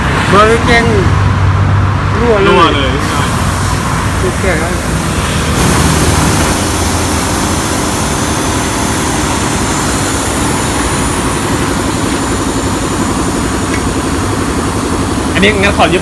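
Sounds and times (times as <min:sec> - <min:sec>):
loud even hiss: 0:03.0 - 0:16.0
machine hum: 0:03.0 - 0:16.0.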